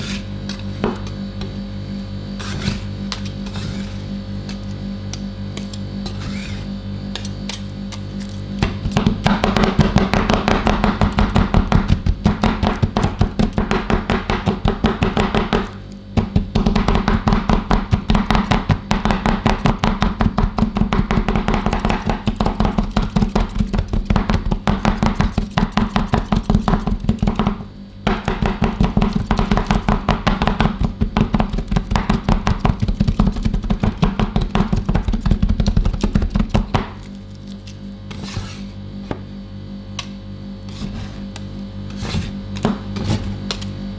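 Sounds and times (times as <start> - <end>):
metal spatulas chopping on steel pan: 8.6 - 37.1.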